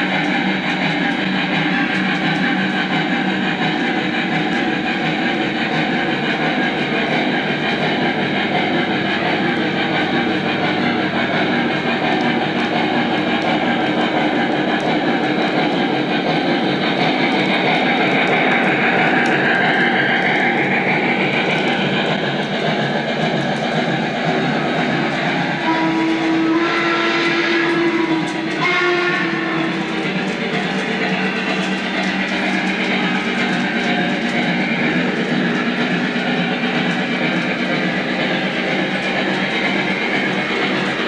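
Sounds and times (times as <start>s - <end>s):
model train wheels rumbling on rail: 0.0s - 41.0s.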